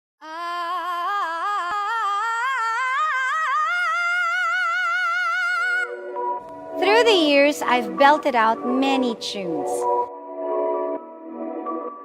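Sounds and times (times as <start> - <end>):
woman singing a cappella: 0.2 - 4.3.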